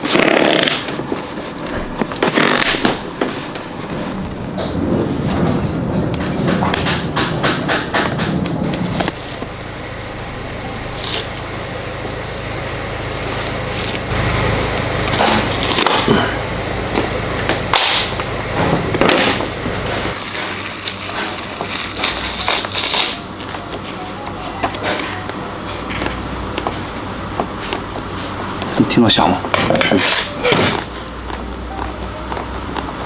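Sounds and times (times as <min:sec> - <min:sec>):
leather boot creaking: 0:00.0 - 0:10.2, 0:29.8 - 0:33.0.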